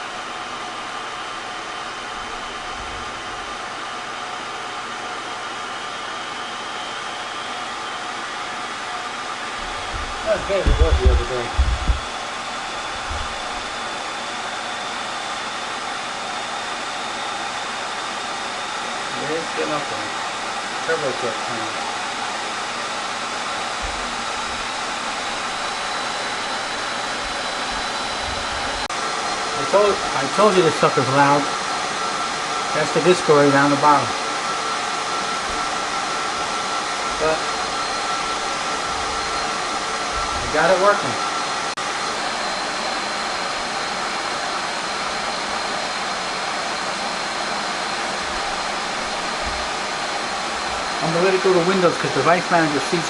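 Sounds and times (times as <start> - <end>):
cooling fans whooshing: 0.0 - 6.0, 8.8 - 15.3, 19.0 - 53.0
thin steady whine: 9.4 - 14.0, 23.3 - 53.0.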